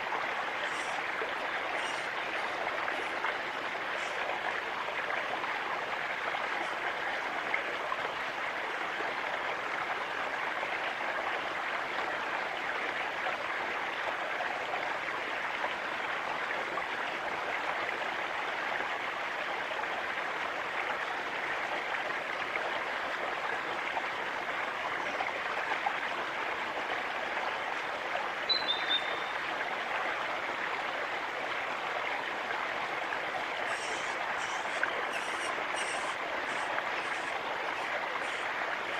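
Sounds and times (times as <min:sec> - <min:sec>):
running water rushing: 0:00.0 - 0:38.9
small bird chirp: 0:28.5 - 0:29.3.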